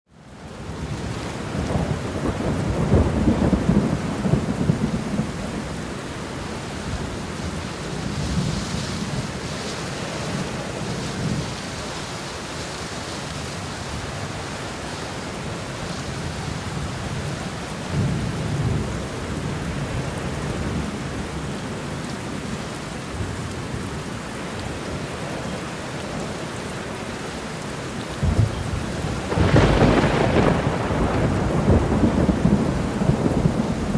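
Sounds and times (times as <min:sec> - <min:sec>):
steady rain: 0:00.1 - 0:33.9
rolling thunder: 0:01.0 - 0:09.5, 0:28.1 - 0:33.9.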